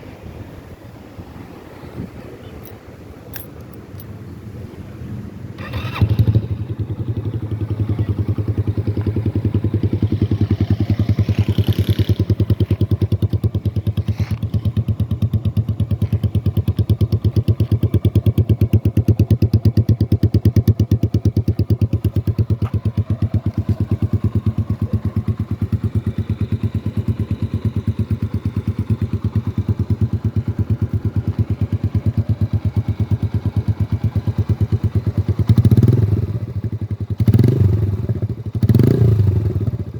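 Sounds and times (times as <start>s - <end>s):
motorcycle engine idling: 5.5s - 39.9s.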